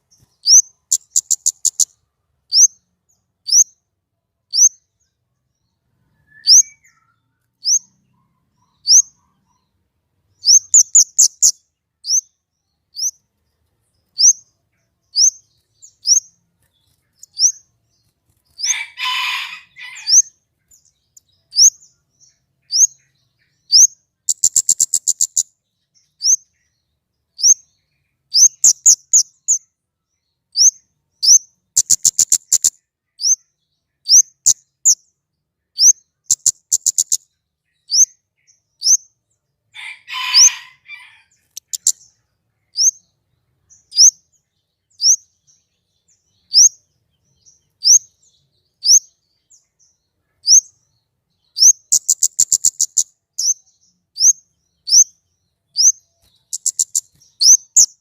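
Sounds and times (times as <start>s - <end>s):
rapid ticking bird trills: 0.0s - 1.9s, 10.4s - 12.3s, 23.7s - 25.5s, 30.6s - 33.4s, 35.8s - 37.2s, 41.4s - 42.0s, 51.6s - 53.6s, 55.8s - 58.0s
songbird chirping: 0.0s - 58.0s
harsh rasping bird call: 18.6s - 20.3s, 39.8s - 41.9s.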